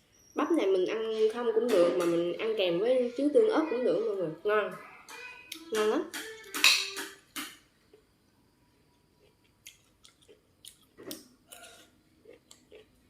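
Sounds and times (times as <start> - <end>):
person chewing corn on the cob: 9.0 - 13.0.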